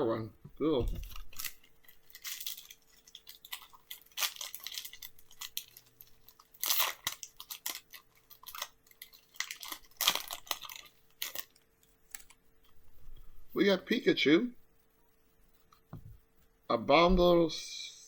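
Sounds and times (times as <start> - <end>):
foil wrapper crinkling and tearing: 0.9 - 12.4.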